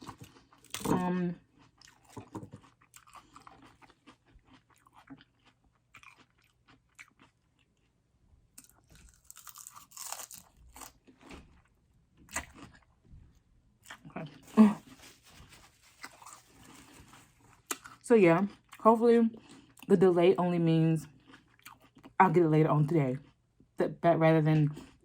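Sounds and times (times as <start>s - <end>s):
chewing crunchy lettuce: 0.0s - 8.0s, 8.6s - 13.0s, 13.8s - 19.9s, 21.0s - 22.2s.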